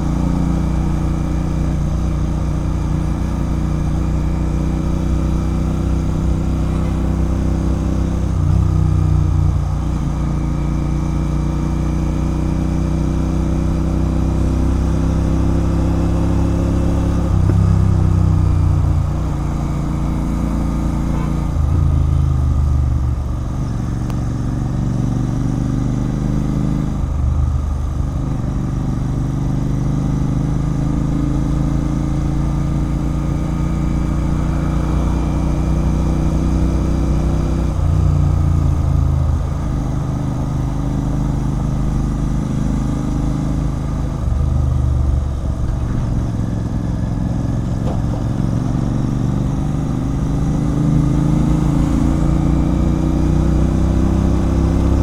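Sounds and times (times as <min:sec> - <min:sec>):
motorcycle engine revving: 0:00.0 - 0:55.0.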